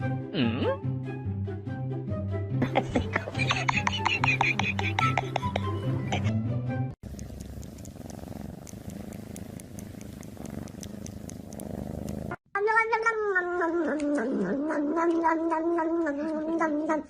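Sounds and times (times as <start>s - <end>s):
cat purring: 7.0s - 12.4s.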